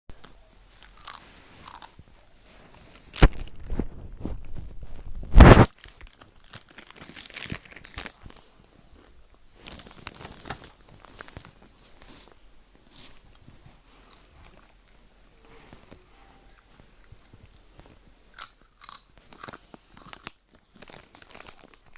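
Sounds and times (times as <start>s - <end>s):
person chewing crunchy food: 0.8s - 2.2s, 16.5s - 21.9s.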